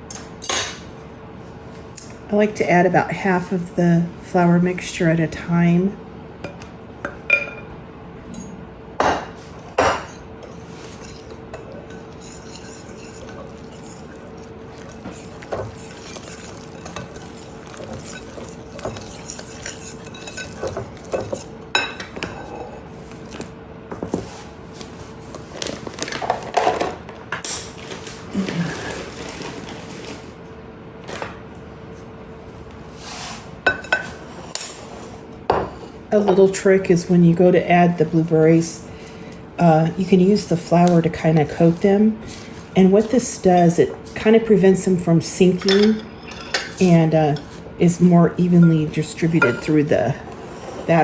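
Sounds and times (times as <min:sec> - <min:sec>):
batter stirring: 0:09.4 - 0:26.0, 0:36.2 - 0:51.0.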